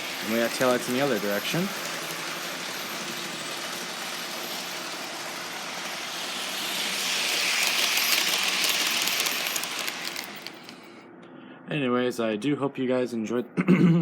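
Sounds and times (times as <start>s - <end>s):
model train motor hum: 0.0s - 10.9s
wheels rattling on rails: 0.0s - 10.9s.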